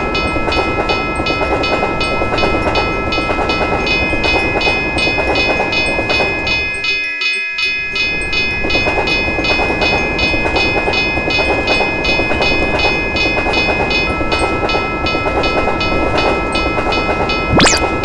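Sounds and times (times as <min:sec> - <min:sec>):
steady tone: 0:17.5 - 0:18.0.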